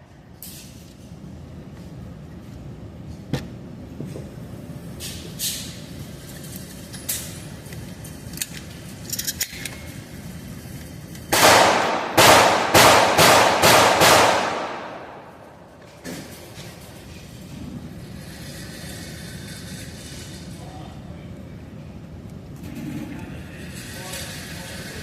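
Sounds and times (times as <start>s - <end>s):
shotgun shots: 11.3s - 15.4s.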